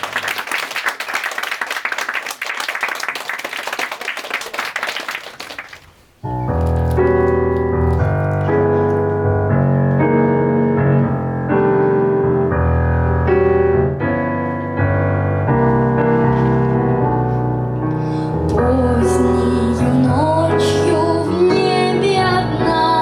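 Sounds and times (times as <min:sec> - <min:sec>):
electric piano chords: 0:06.2 - 0:23.0.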